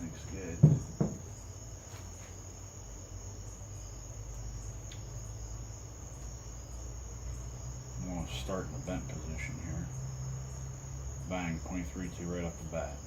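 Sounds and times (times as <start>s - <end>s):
crickets trilling: 0.0s - 13.0s.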